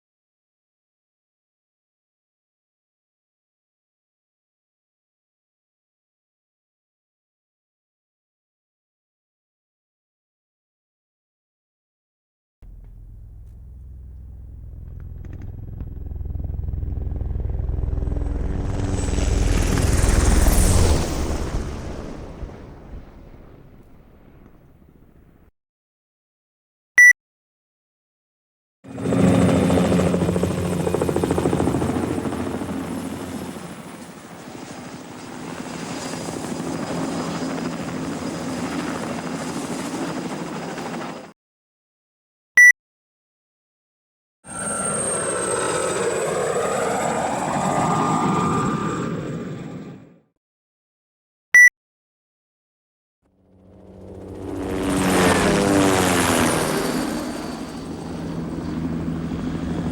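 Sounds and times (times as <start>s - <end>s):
helicopter rotor beating: 12.6s - 25.4s, 28.9s - 41.3s, 44.5s - 50.0s, 53.4s - 59.9s.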